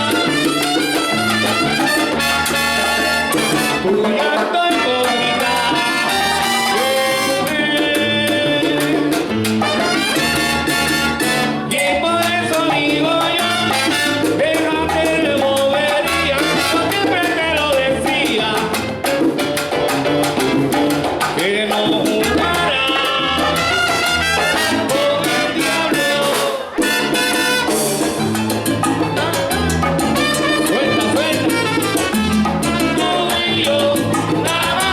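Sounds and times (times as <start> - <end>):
live salsa band: 0.0 - 34.9
lead voice singing: 2.6 - 9.4, 11.3 - 18.9, 21.3 - 27.2, 30.5 - 32.0, 32.7 - 34.9.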